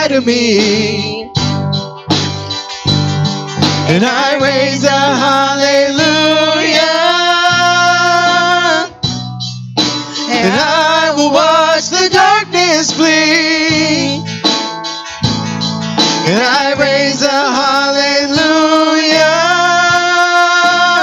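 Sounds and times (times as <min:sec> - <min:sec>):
guitar: 0:00.0 - 0:21.0
people singing: 0:03.9 - 0:09.0, 0:10.2 - 0:14.2, 0:16.2 - 0:21.0.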